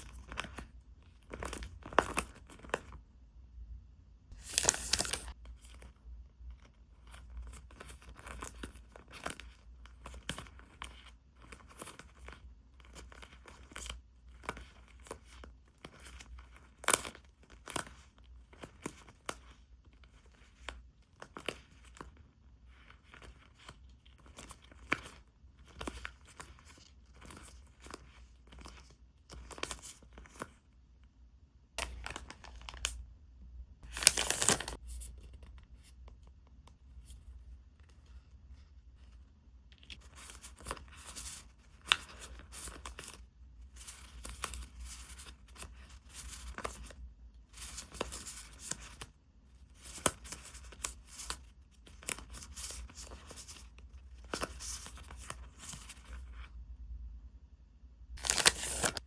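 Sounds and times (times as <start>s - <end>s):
packaging rustling and crinkling: 4.3s - 5.4s, 31.8s - 33.0s, 33.8s - 35.1s, 58.2s - 59.0s
packaging tearing: 33.9s - 34.8s, 58.2s - 59.0s.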